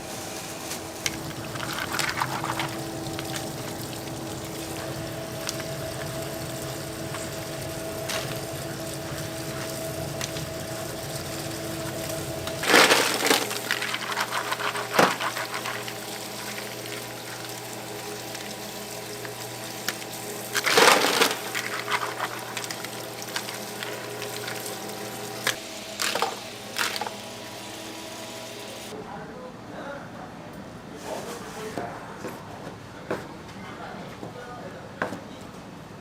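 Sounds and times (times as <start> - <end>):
kitchen machinery humming: 0.0 - 29.0
water splashing and sloshing: 1.0 - 11.1.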